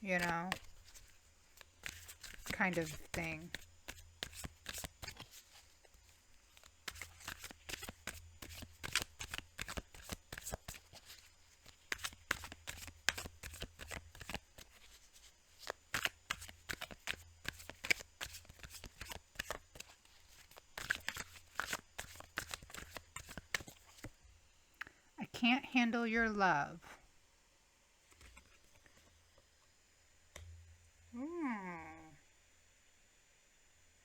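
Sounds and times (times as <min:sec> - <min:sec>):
cards being shuffled: 0:00.0 - 0:24.2, 0:28.1 - 0:29.1.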